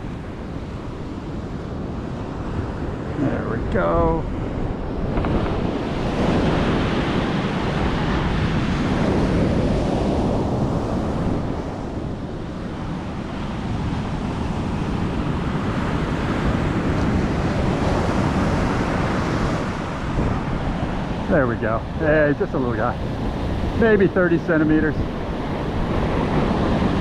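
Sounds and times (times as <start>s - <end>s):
surf breaking on a beach: 0.0s - 27.0s
wind buffeting the microphone: 0.0s - 27.0s.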